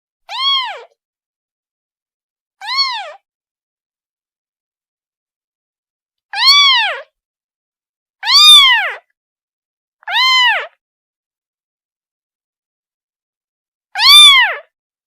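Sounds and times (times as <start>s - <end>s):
kitten meowing: 0.3s - 1.0s, 2.6s - 3.2s, 6.4s - 7.1s, 8.2s - 9.1s, 10.0s - 10.8s, 14.0s - 14.7s.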